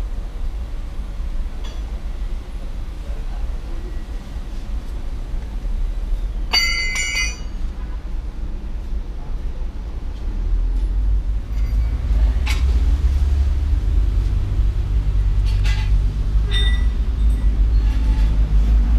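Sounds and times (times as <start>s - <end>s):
steady low rumble: 0.0s - 18.9s
metal piece clinking: 6.5s - 7.6s.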